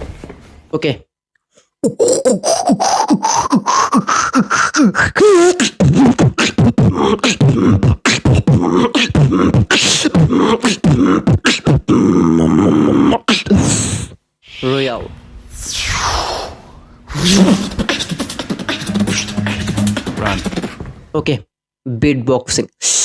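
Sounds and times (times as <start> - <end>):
beatboxing: 1.8 - 14.2, 15.6 - 20.9.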